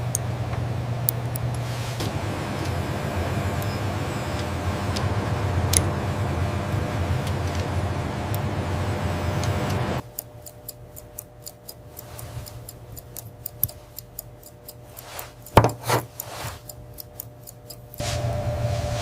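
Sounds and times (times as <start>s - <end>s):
clock ticking: 2.6s - 18.0s
sweeping sounds: 18.0s - 19.0s.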